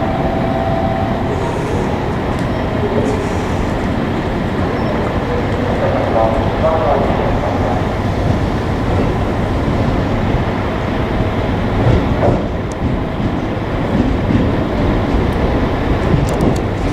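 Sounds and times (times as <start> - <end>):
train wheels rumbling on rails: 0.0 - 16.9.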